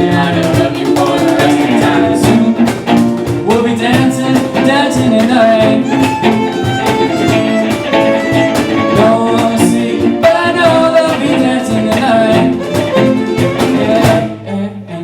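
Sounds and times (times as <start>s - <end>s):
person singing: 0.0s - 15.0s
strummed guitar: 0.0s - 15.0s
fiddle playing: 4.4s - 15.0s.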